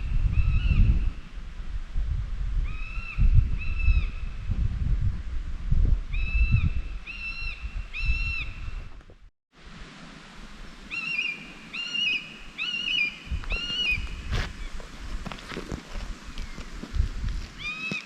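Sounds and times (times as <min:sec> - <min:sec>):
wind rumble on microphone: 0:00.0 - 0:10.8, 0:13.2 - 0:17.7.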